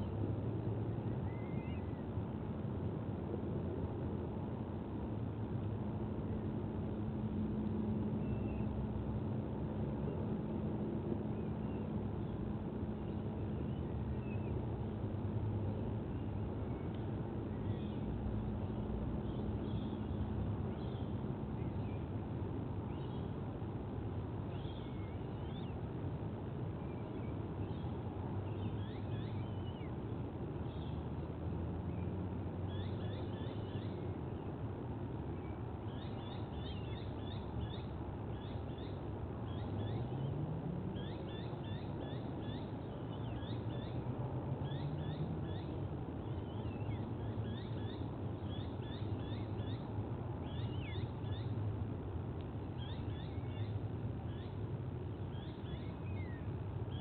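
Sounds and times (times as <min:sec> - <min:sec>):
steady low rumble: 0:00.0 - 0:39.6.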